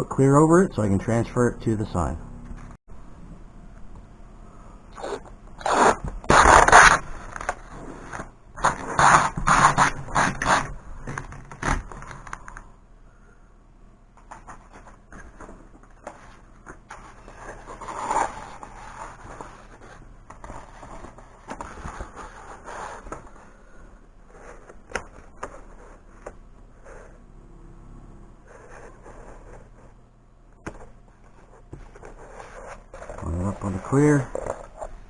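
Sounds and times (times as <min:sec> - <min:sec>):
decal sheets scraping and rustling: 0:14.2 - 0:23.6, 0:30.8 - 0:34.9.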